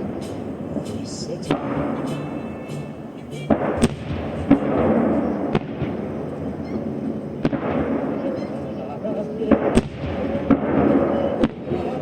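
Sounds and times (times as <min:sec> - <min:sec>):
music: 0:00.0 - 0:06.0
crowd noise: 0:00.0 - 0:12.0
fireworks bangs: 0:00.0 - 0:12.0.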